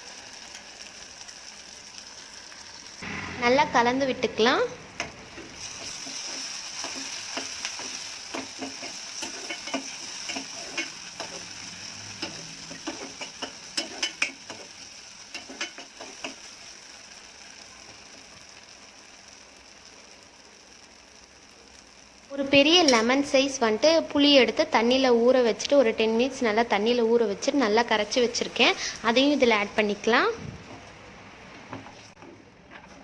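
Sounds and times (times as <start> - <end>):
paste sizzling in oil: 5.2 - 23.3.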